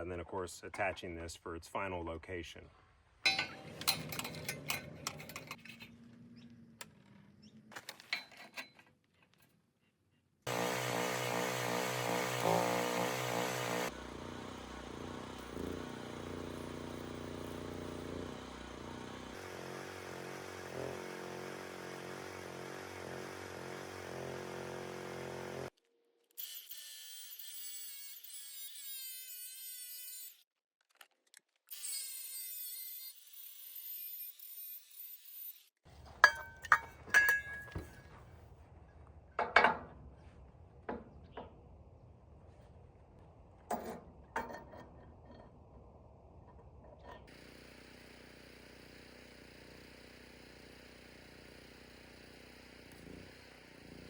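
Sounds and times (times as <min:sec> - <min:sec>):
power tool running on steel: 0:03.3 - 0:05.9, 0:10.5 - 0:25.8, 0:47.1 - 0:54.0
whining power tool: 0:10.5 - 0:25.8, 0:47.1 - 0:54.0.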